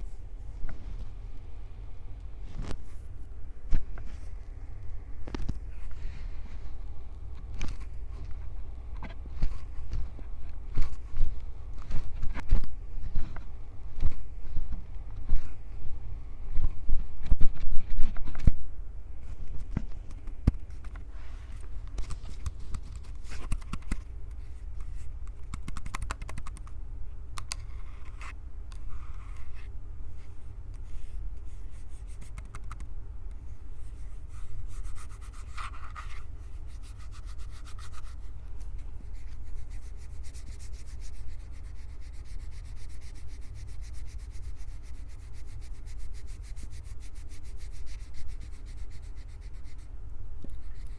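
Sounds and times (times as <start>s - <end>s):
hands rubbing recorder microphones: 19.3s - 26.6s, 27.4s - 50.9s.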